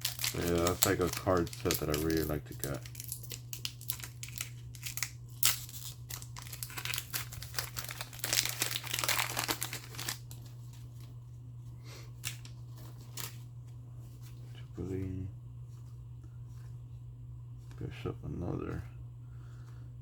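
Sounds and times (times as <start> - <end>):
foil wrapper crinkling and tearing: 0.0 - 11.1, 12.2 - 13.4.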